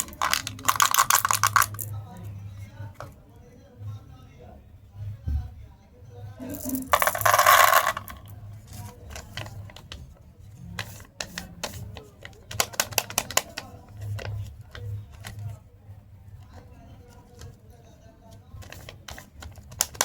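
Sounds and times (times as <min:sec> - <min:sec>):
wrapper crinkling: 0:00.0 - 0:01.9.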